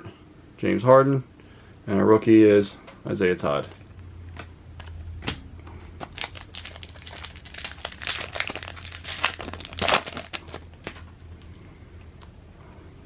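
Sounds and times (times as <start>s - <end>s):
plastic wrapper tearing and crinkling: 5.9s - 11.0s.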